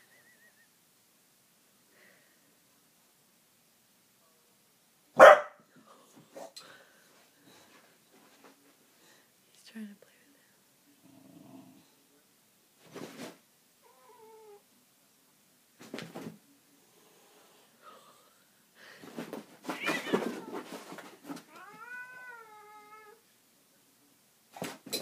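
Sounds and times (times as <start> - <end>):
cat meowing: 13.8 - 14.6, 21.5 - 23.2
cat yowling: 21.5 - 23.2.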